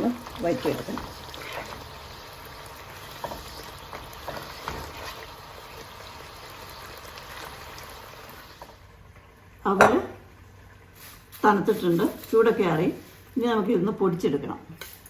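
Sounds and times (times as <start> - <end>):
syrup bubbling in a pan: 0.0 - 9.1.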